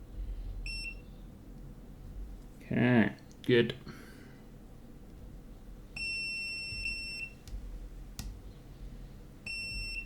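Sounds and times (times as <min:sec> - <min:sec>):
multimeter continuity beep: 0:00.7 - 0:01.0, 0:06.0 - 0:07.4, 0:09.4 - 0:10.0.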